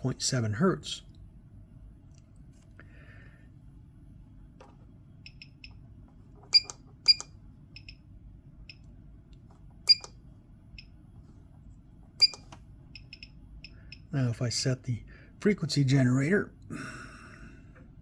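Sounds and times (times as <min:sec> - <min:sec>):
low steady hum: 0:00.0 - 0:18.0
short high beeps: 0:12.2 - 0:12.4.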